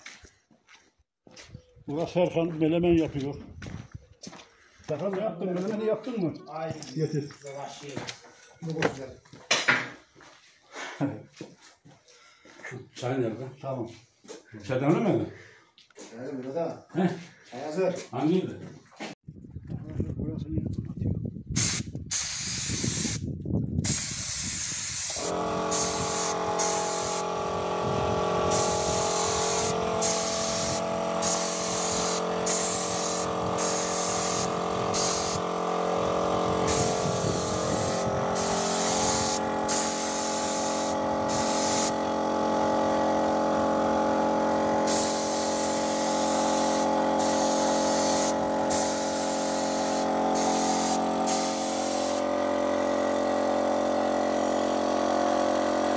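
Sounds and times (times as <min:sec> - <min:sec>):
paint sprayer hissing: 0:21.6 - 0:23.2, 0:23.8 - 0:55.6
sprayer motor running: 0:24.0 - 0:55.9.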